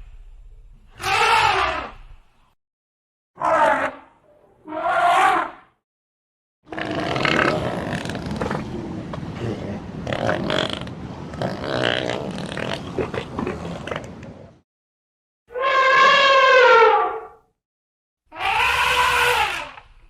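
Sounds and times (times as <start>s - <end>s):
elephant trumpet call: 15.5s - 17.2s, 18.3s - 19.7s.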